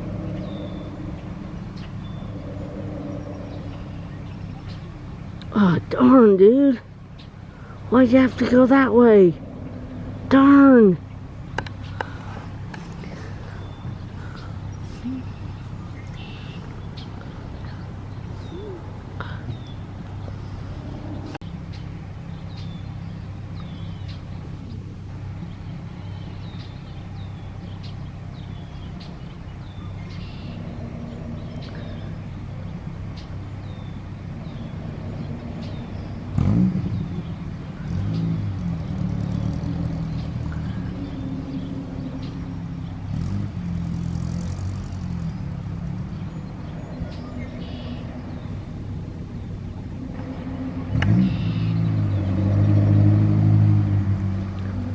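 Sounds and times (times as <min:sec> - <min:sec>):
vehicle engine humming: 0:00.0 - 0:54.9
bird chirps: 0:00.2 - 0:05.4, 0:11.1 - 0:38.5, 0:39.8 - 0:43.4, 0:45.2 - 0:52.8.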